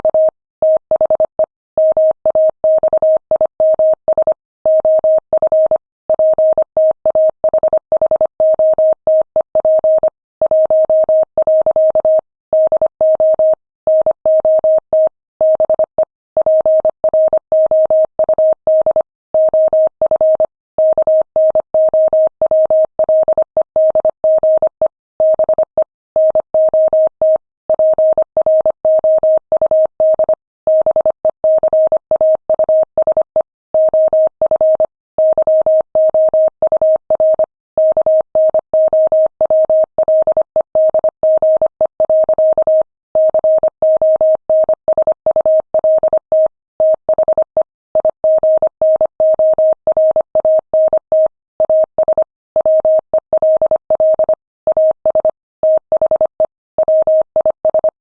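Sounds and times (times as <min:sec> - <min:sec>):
morse code tone beeping: 0:32.5 - 0:58.0.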